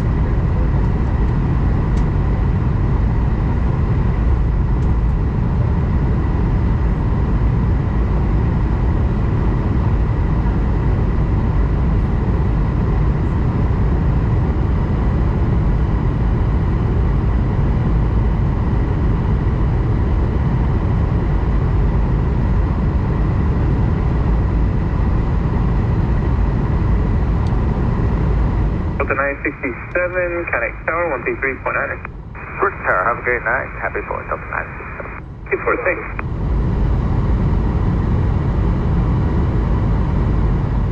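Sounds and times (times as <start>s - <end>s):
aircraft cabin engine rumble: 0.0s - 40.9s
faint steady whine: 25.8s - 40.9s.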